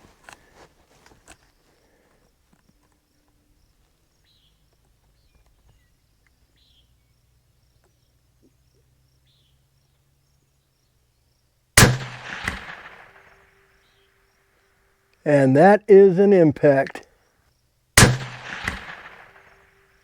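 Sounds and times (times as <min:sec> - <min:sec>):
sharp crack: 0:11.8 - 0:13.6, 0:18.0 - 0:20.0
suppressed rifle shot: 0:11.8 - 0:13.6, 0:18.0 - 0:19.8.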